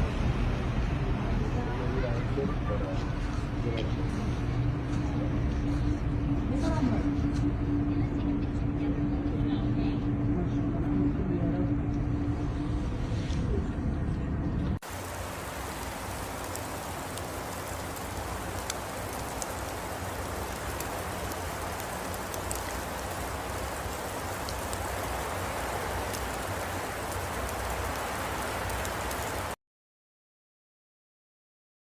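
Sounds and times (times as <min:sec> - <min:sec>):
hiss of falling rain: 0:14.8 - 0:29.6.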